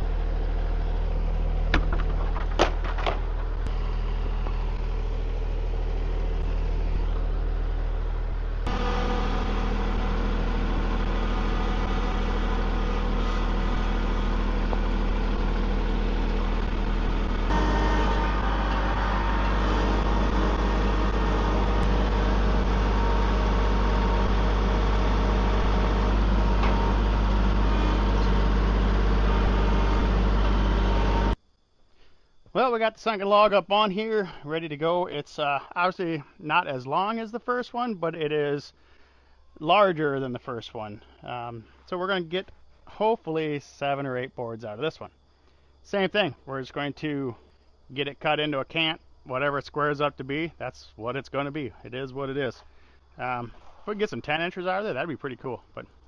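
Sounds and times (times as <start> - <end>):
tractor engine running: 0.0 - 31.4
sharp knocks: 1.7 - 3.4.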